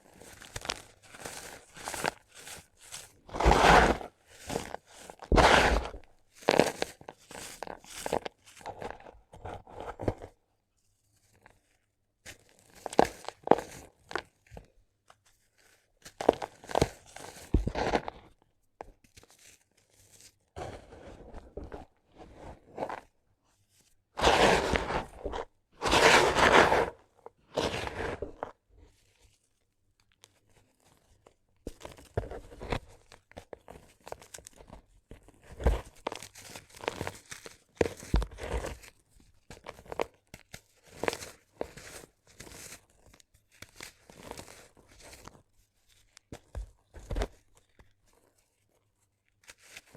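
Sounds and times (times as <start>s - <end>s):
sand-cement pieces crunching: 3.3s - 8.9s, 16.2s - 18.2s, 24.2s - 28.5s.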